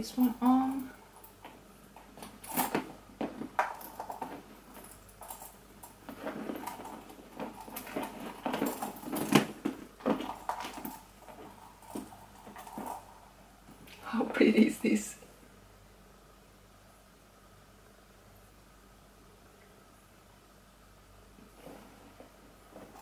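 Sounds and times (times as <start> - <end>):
metal clasps clinking: 0.1 - 13.3
bag rustling: 1.1 - 13.9, 21.5 - 23.0.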